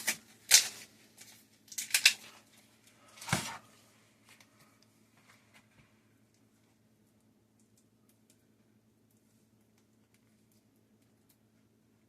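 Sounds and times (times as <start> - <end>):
plastic package crinkling: 0.0 - 3.6.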